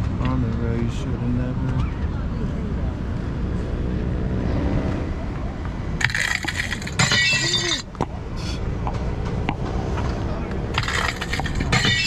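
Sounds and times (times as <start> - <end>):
glass cracking and shattering: 6.0 - 7.8, 10.8 - 12.0.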